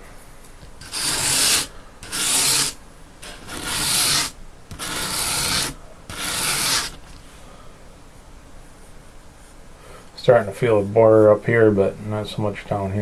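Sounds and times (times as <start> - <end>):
knife rasping on sandpaper: 0.8 - 7.2.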